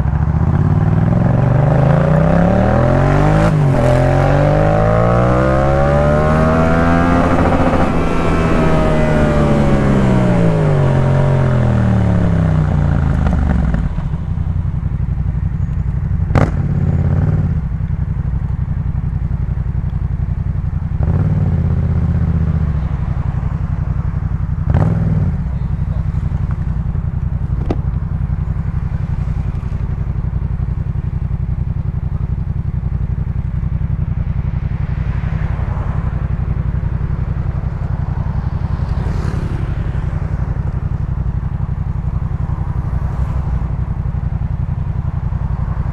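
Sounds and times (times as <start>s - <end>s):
motorcycle engine idling: 0.0s - 45.9s
exhaust cracks: 24.3s - 45.9s.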